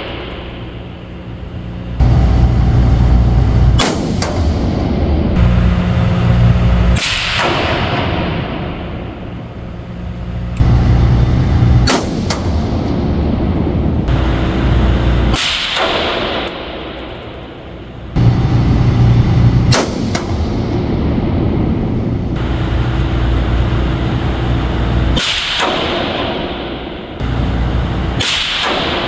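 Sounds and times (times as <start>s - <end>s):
rifle shots with echo: 3.0s - 4.6s, 10.6s - 13.4s, 18.2s - 22.5s, 28.2s - 29.0s.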